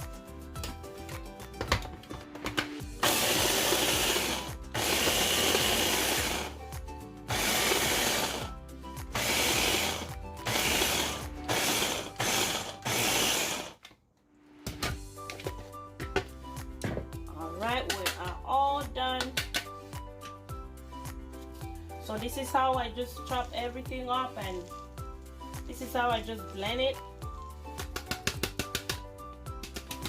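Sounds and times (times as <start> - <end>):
blender grinding oats: 2.8 - 6.6, 7.3 - 13.8.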